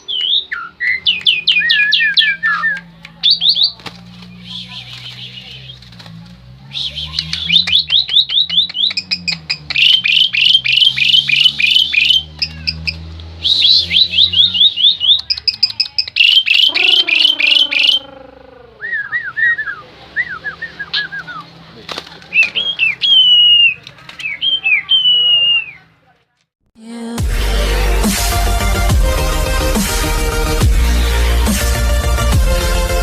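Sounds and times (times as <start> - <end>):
starling singing: 0.0 - 5.9, 6.6 - 21.6, 22.3 - 25.9
harsh bird call: 6.7 - 21.5, 22.3 - 25.9.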